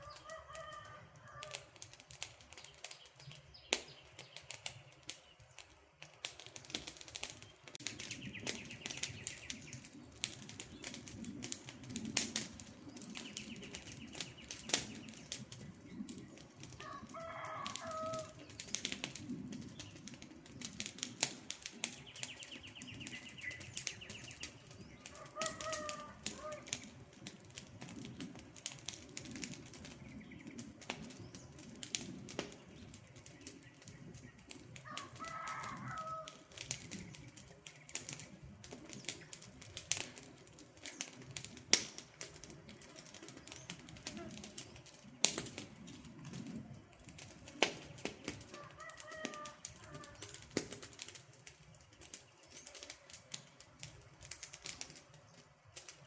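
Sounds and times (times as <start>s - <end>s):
campfire crackling: 0.0s - 56.0s
bird calling: 22.1s - 26.8s.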